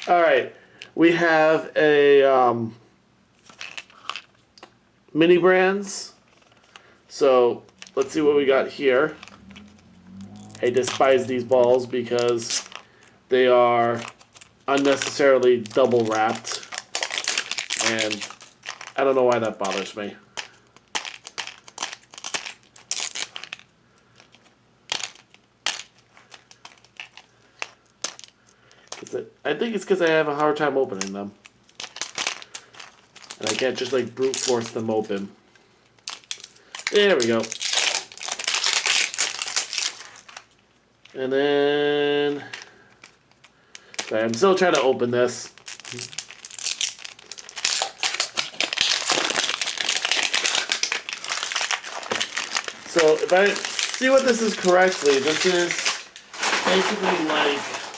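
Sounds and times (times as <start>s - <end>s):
plastic wrapping crinkling: 3.4s - 4.7s, 7.6s - 29.2s, 30.9s - 41.2s, 42.3s - 57.9s
plastic capsule clicking and crackling: 9.2s - 13.1s, 13.9s - 29.1s, 30.9s - 34.8s, 35.8s - 40.6s, 42.6s - 44.9s, 45.5s - 57.0s.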